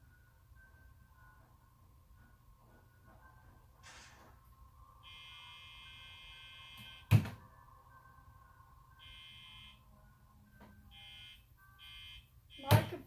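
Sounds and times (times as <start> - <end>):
electronic beeps: 10.8 - 13.0.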